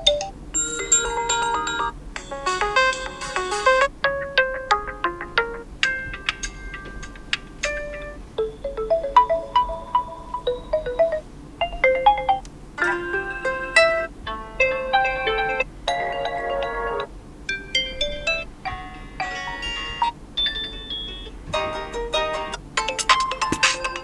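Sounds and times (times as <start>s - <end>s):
phone alarm jingles: 0.0s - 3.9s, 17.8s - 21.4s.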